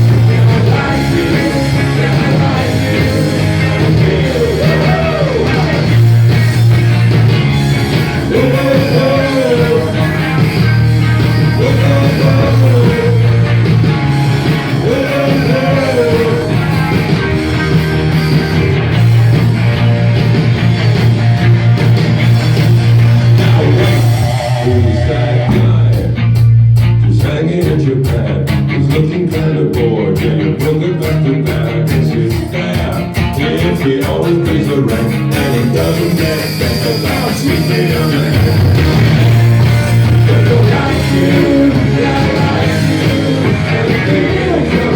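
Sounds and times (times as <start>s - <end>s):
rock band playing: 0.0s - 44.9s
person singing: 0.1s - 5.8s, 8.2s - 10.5s, 11.4s - 13.6s, 14.7s - 17.0s, 23.4s - 26.2s, 27.1s - 38.8s, 40.1s - 44.9s.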